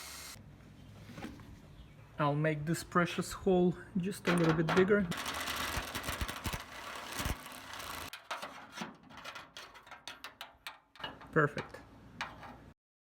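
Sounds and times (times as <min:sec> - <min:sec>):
power drill boring metal: 0:05.2 - 0:08.1.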